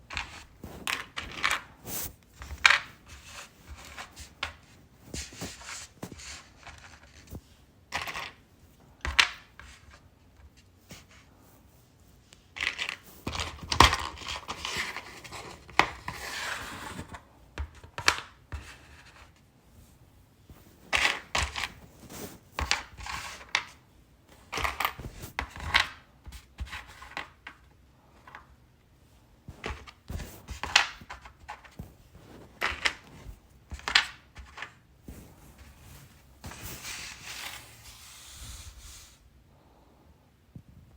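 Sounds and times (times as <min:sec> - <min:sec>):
gems rustling and scraping: 0:00.0 - 0:08.4, 0:20.5 - 0:25.9, 0:29.5 - 0:39.2.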